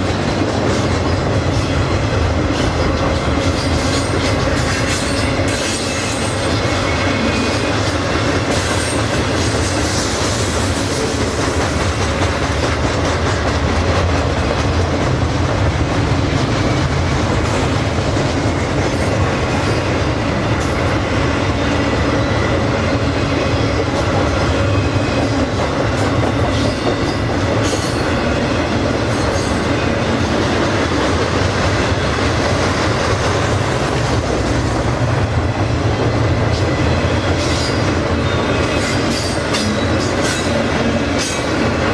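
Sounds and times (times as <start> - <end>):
train wheels rumbling on rails: 0.0 - 41.9.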